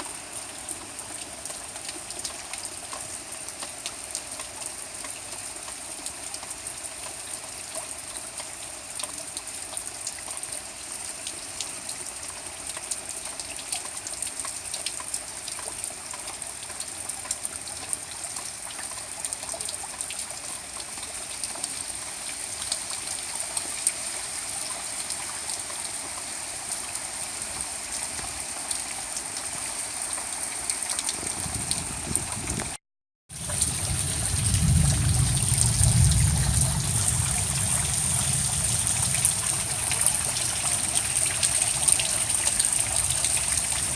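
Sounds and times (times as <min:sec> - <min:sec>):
rain hiss: 0:00.0 - 0:43.9
running floodwater: 0:00.0 - 0:43.9
low rumble: 0:33.4 - 0:43.0.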